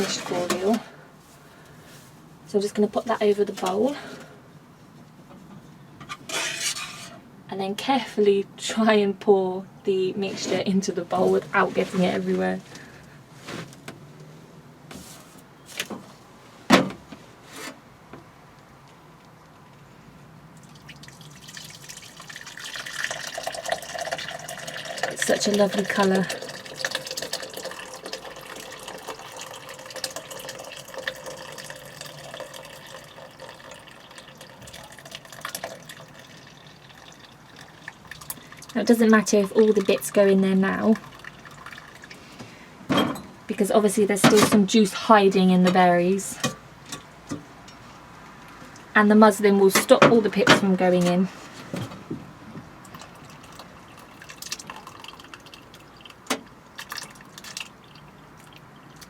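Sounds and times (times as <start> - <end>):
liquid pouring and splashing: 20.6 - 42.3, 52.8 - 59.0.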